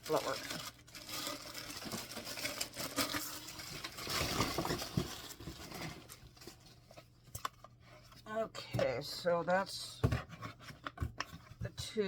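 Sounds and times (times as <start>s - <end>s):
packaging rustling: 0.0s - 8.2s.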